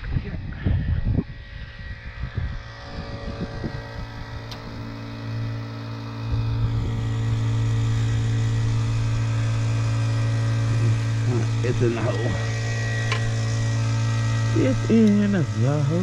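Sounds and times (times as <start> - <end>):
engine humming: 2.6 - 16.0.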